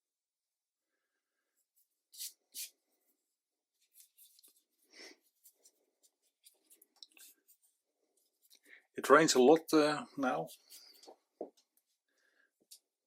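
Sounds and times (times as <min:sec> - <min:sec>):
brush strokes on paper: 0:01.5 - 0:08.7, 0:10.0 - 0:13.0.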